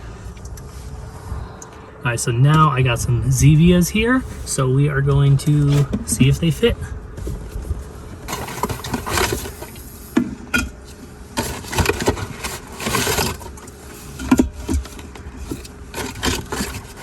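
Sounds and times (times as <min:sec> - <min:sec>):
truck engine humming: 0:00.0 - 0:17.0
cans scraping and rustling: 0:07.2 - 0:17.0.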